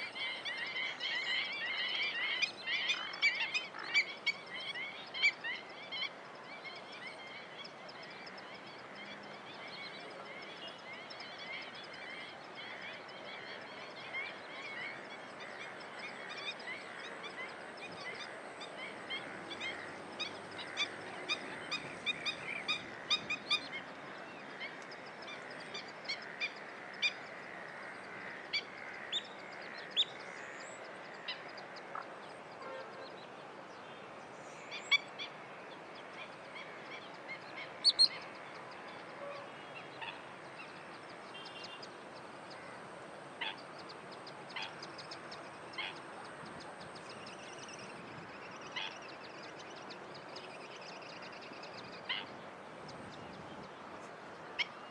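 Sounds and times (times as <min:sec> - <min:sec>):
steady background hiss: 0:00.0 - 0:54.9
wetland birds calling: 0:34.6 - 0:49.9.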